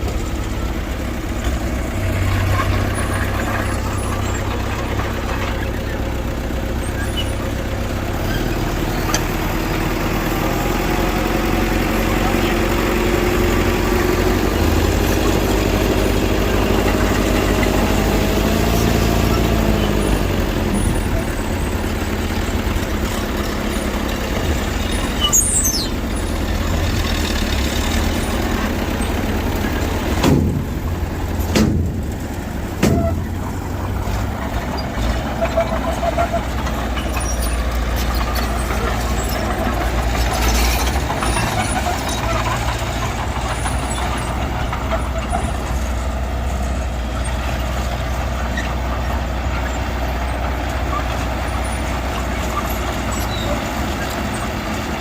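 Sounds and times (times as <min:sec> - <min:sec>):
diesel engines running: 0:00.0 - 0:55.0.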